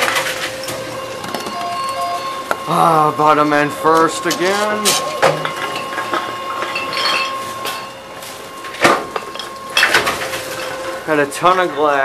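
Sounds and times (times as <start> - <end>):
machine motor whine: 0.0 - 12.0.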